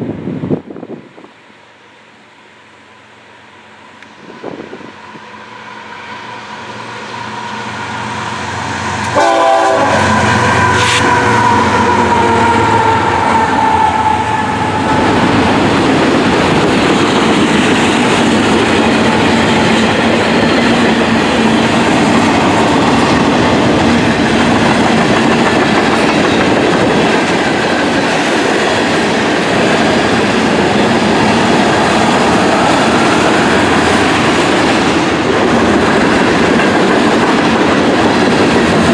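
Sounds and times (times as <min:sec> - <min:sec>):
locomotive air horn: 0:05.8 - 0:15.2
freight cars rumbling and clacking: 0:14.9 - 0:38.9.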